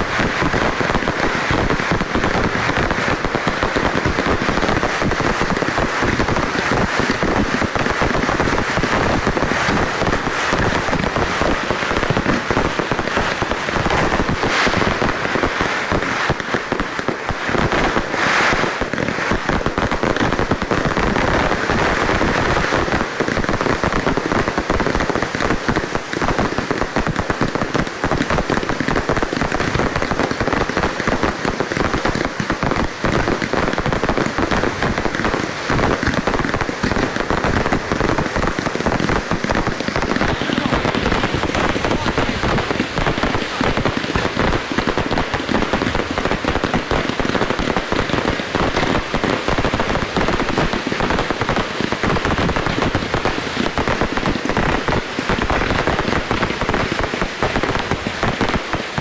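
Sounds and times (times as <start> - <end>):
fireworks bangs and crackling: 0.0 - 59.0.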